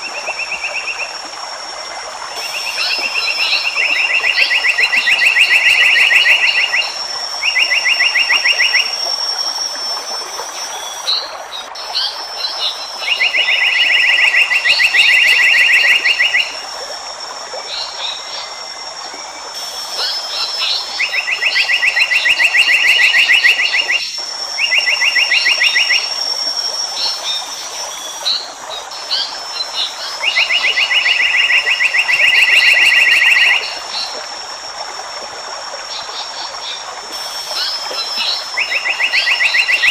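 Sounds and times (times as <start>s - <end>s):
constant hiss: 0.0s - 39.9s
high insect-like whine: 0.0s - 39.9s.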